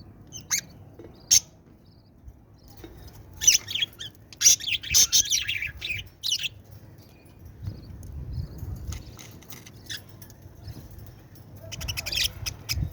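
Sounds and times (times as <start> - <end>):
bird chirping: 0.0 - 12.9.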